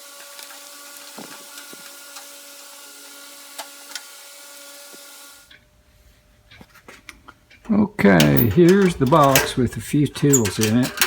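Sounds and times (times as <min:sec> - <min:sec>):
electric fan whirring: 0:00.0 - 0:11.0
small parts clicking: 0:07.6 - 0:11.0.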